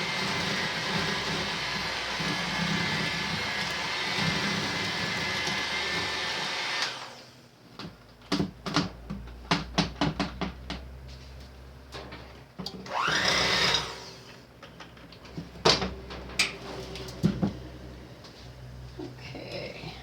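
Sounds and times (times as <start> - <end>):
electric food chopper running: 0.0 - 7.3, 12.8 - 14.3
sharp knocks and clicks: 7.8 - 10.9.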